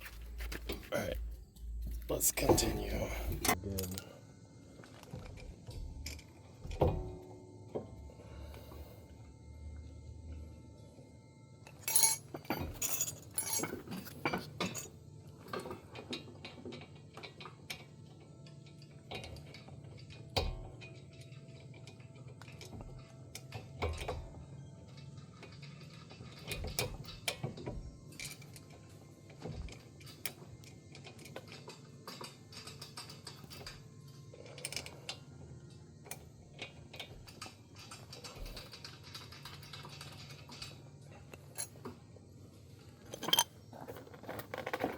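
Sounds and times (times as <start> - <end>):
metallic clinks of hand tools: 11.8 - 14.9, 43.1 - 43.5.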